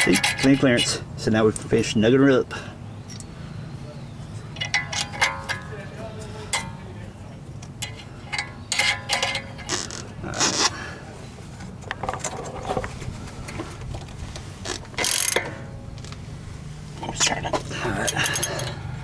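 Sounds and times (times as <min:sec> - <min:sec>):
metallic clicks and clanks of tools: 0:00.0 - 0:00.9, 0:04.6 - 0:05.8, 0:06.5 - 0:06.8, 0:07.6 - 0:10.0, 0:15.0 - 0:15.8, 0:17.6 - 0:18.9
steady low hum: 0:00.0 - 0:19.0.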